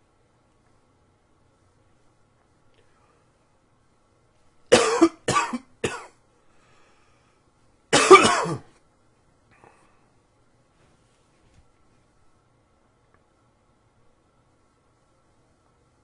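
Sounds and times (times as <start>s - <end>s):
man coughing: 4.7s - 6.2s, 7.9s - 8.8s.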